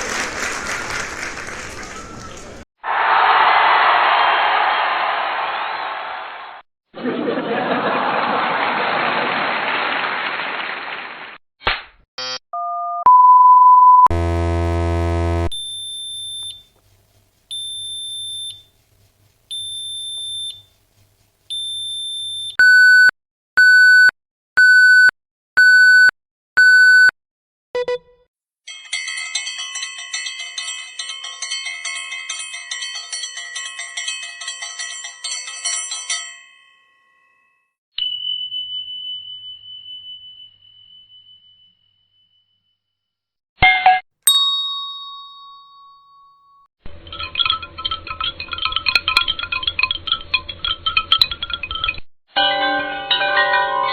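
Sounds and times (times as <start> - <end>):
low buzzer: 14.1 - 16.5
single ding: 43.6 - 46.6
rapid ringing: 47.0 - 51.8.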